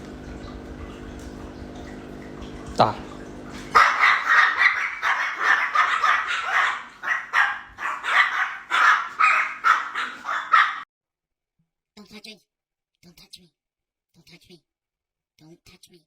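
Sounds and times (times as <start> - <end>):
dog barking: 3.6 - 10.8.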